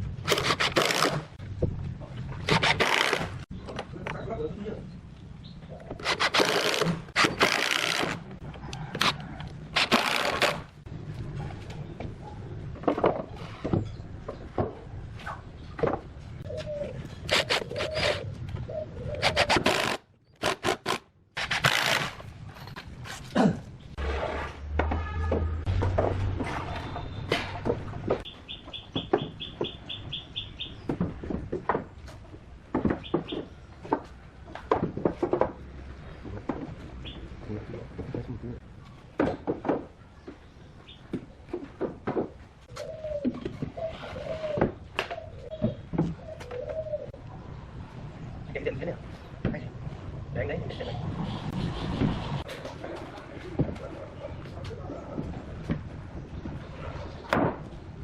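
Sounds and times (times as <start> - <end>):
tool scraping wood: 5.9 - 8.2, 17.2 - 18.2
sharp knocks and clatter: 30.8 - 36.8.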